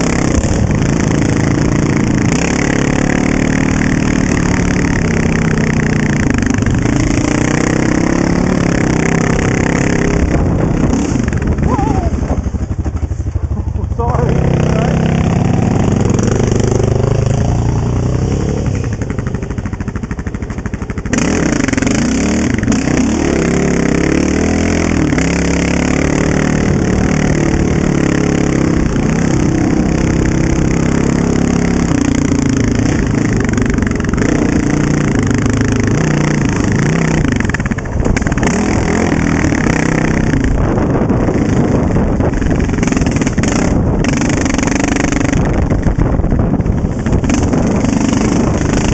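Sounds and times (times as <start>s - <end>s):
quad bike engine revving: 0.0s - 48.9s.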